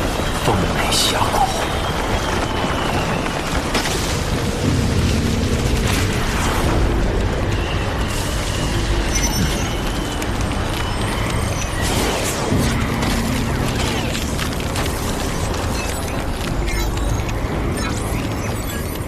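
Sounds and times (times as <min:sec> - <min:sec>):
thunder: 0:00.0 - 0:18.7
music: 0:04.2 - 0:19.0.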